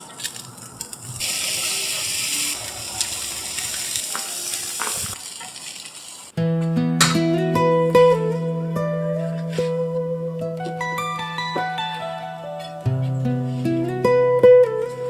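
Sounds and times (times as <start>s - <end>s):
meat sizzling on a grill: 0.0s - 6.3s
acoustic guitar music: 6.3s - 15.0s.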